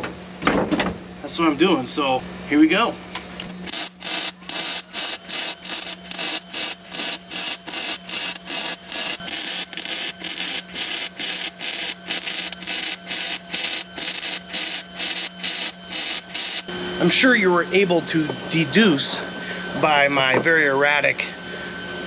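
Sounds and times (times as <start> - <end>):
spot welding arc crackling: 3.6 - 16.7.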